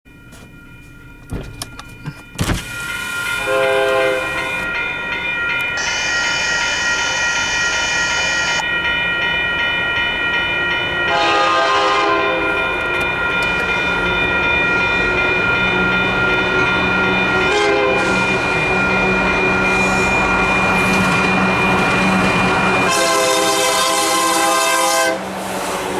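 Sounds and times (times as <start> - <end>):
crossing warning bell ringing: 0.1 - 25.2
rumble of oncoming train: 0.1 - 25.9
train horn blasts: 3.3 - 4.6, 11.1 - 12.6, 17.4 - 18.4, 22.8 - 25.9.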